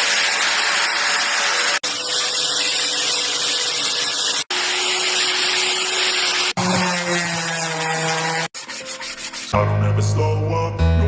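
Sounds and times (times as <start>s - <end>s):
power tool motor whining: 0.0s - 8.6s.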